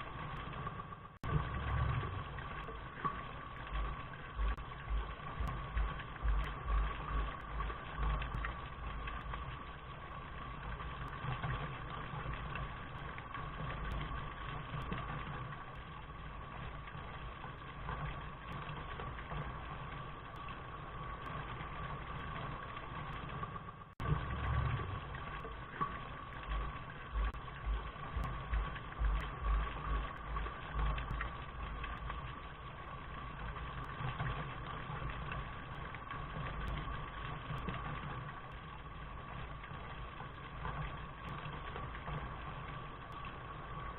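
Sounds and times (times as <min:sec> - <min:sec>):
low uneven rumble: 0:00.0 - 0:43.9.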